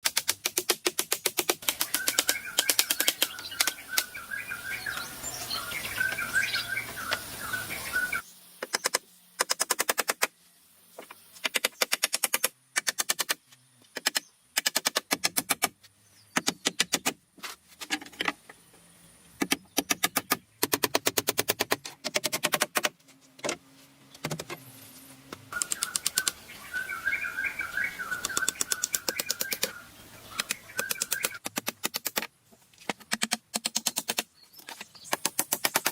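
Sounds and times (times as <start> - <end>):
birds chirping: 1.6 - 9.2, 24.0 - 31.4, 33.9 - 35.9.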